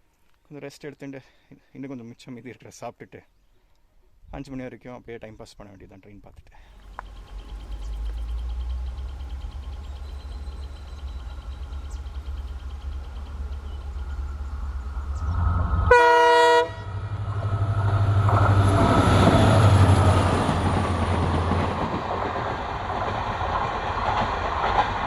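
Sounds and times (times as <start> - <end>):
train engine rumble and wheel noise: 6.7 - 25.0
train horn blast: 13.3 - 18.2.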